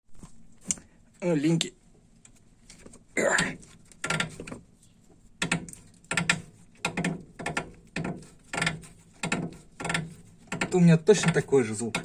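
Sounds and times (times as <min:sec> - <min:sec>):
suspension links creaking: 0:02.7 - 0:04.6, 0:05.4 - 0:12.0.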